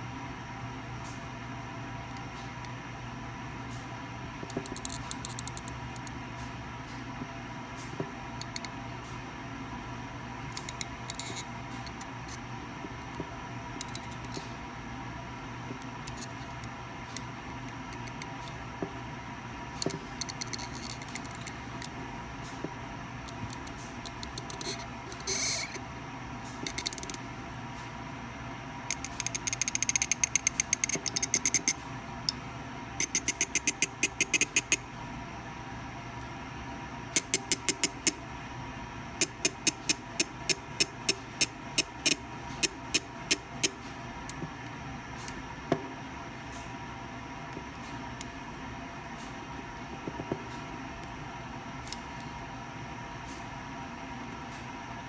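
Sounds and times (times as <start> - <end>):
steady electrical hum: 0.0 - 55.0
metal tool clicking: 28.9 - 31.8, 33.0 - 34.8, 37.2 - 38.2.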